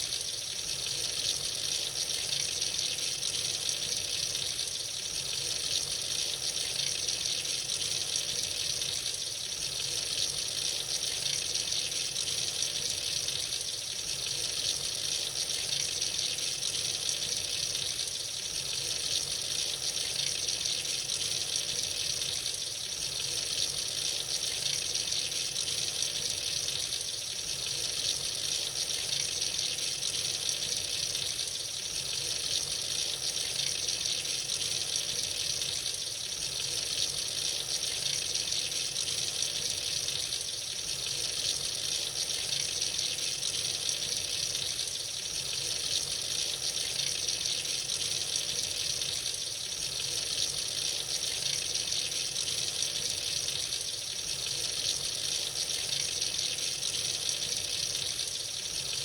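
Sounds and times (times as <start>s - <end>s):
tap water running into sink: 0.6s - 59.0s.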